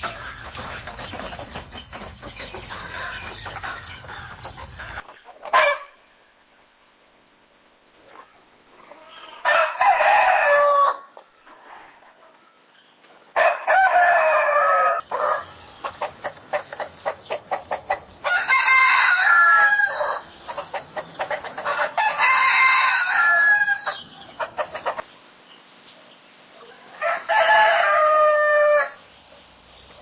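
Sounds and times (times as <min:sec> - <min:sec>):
rooster clucking: 0:00.0 - 0:06.0, 0:13.4 - 0:25.1
rooster crowing: 0:09.4 - 0:11.1, 0:13.4 - 0:15.6, 0:18.2 - 0:20.3, 0:21.6 - 0:24.0, 0:26.7 - 0:29.0.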